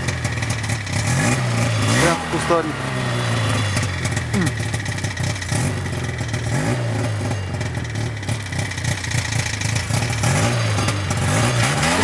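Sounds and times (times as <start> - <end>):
snowmobile engine running: 0.0 - 12.0.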